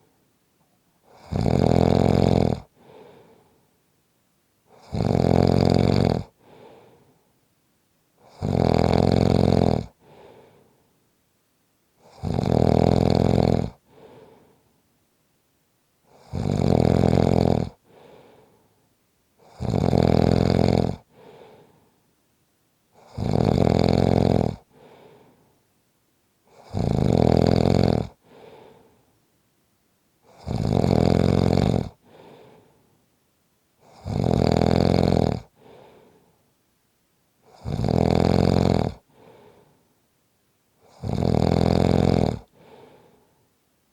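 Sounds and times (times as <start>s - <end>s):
person snoring: 1.1s - 3.4s, 4.7s - 7.0s, 8.2s - 10.6s, 12.0s - 14.5s, 16.1s - 18.4s, 19.4s - 21.8s, 23.0s - 25.3s, 26.5s - 28.9s, 30.3s - 32.7s, 33.8s - 36.2s, 37.5s - 39.6s, 40.8s - 43.2s.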